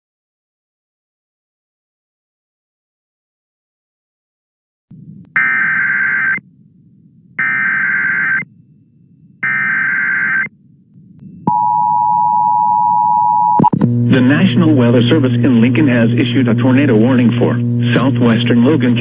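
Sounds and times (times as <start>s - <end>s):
low hum: 4.9s - 19.0s
digital data bursts: 5.4s - 6.4s, 7.4s - 8.4s, 9.4s - 10.5s
two-tone attention signal: 5.4s - 6.4s, 7.4s - 8.4s, 9.4s - 10.5s, 11.3s - 13.8s.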